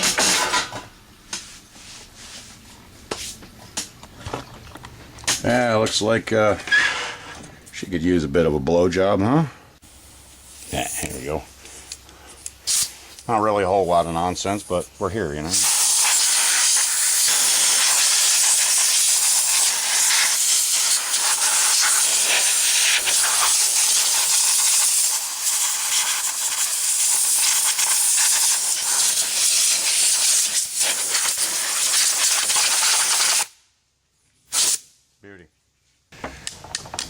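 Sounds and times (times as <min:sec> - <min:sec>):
compressed air hissing: 0:11.6 - 0:13.3, 0:15.4 - 0:33.6, 0:34.5 - 0:34.9.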